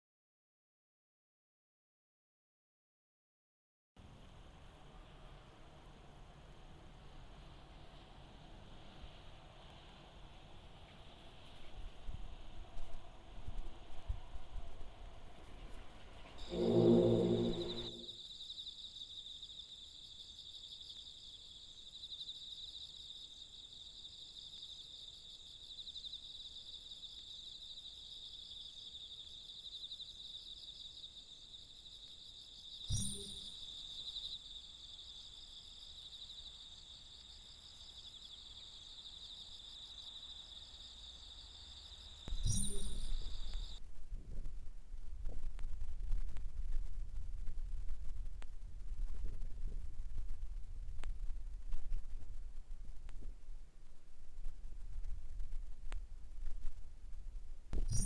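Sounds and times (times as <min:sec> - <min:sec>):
crickets trilling: 0:04.2 - 0:43.8, 0:57.8 - 0:58.0
low rumble: 0:16.4 - 0:18.1.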